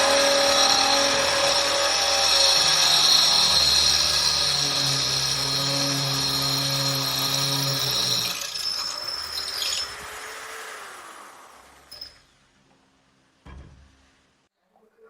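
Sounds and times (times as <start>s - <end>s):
electric polisher motor whining: 0.0s - 12.0s.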